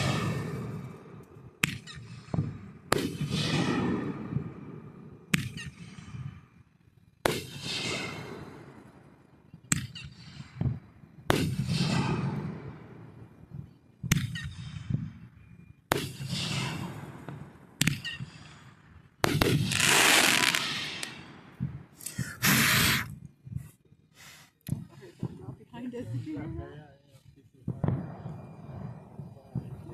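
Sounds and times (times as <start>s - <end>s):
fireworks bangs: 0.0s - 6.4s, 7.2s - 23.7s, 27.6s - 29.9s.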